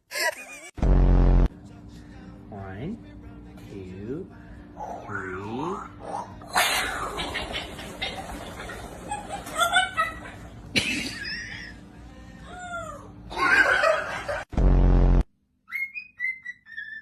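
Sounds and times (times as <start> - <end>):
loud harsh buzz: 0.8 - 1.5, 14.5 - 15.3
parrot squawking: 4.8 - 9.2, 15.7 - 17.0
whistled notes: 15.7 - 17.0.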